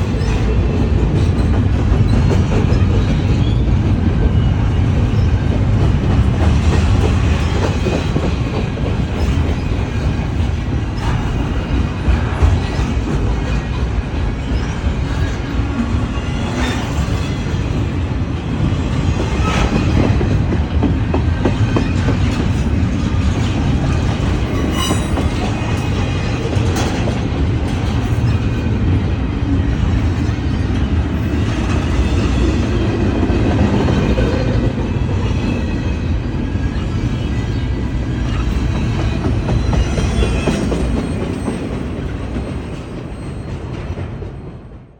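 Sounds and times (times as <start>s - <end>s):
freight train rumble: 0.0s - 44.9s
faint wheel squeal: 24.6s - 25.3s.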